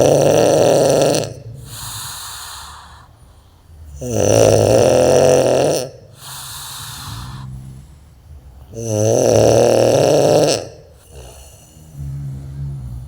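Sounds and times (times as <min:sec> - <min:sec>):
man snoring: 0:00.0 - 0:03.1, 0:03.8 - 0:13.0
soft breath: 0:01.5 - 0:04.0, 0:06.0 - 0:08.7.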